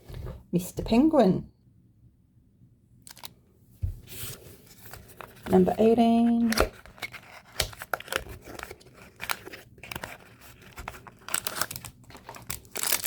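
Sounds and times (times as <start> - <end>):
packaging crinkling and tearing: 3.1 - 3.3, 6.3 - 13.0
small crackles and rustles: 4.1 - 13.0.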